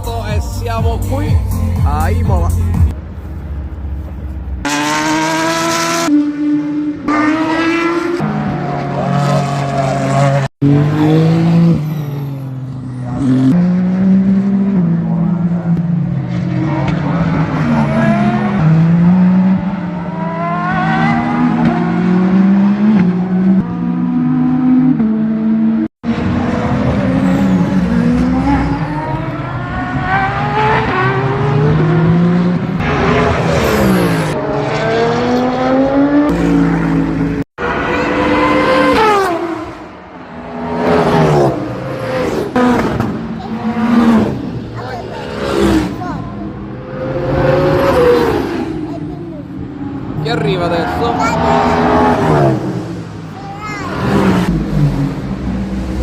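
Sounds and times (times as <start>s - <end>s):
race cars accelerating past: 4.7s - 56.0s.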